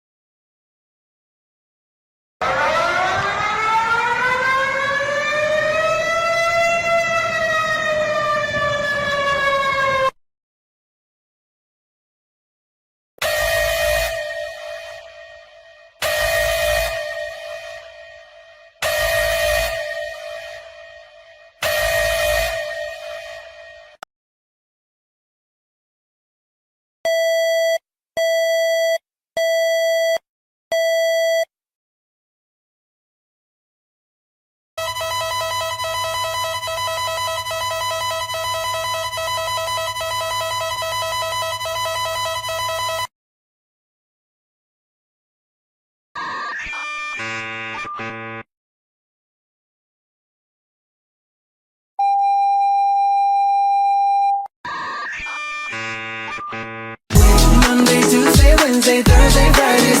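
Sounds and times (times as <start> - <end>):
warning siren wailing: 2.4 - 10.2, 13.2 - 24.0, 34.8 - 43.1
buzzy alarm beeps: 13.2 - 23.7.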